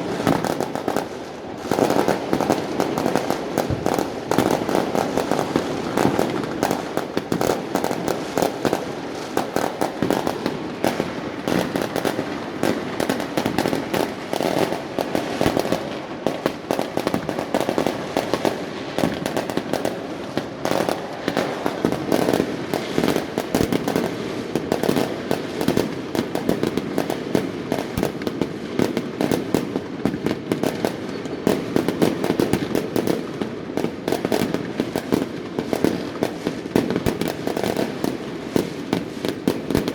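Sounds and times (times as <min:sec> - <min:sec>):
fireworks cracks and bangs: 0:00.0 - 0:39.9.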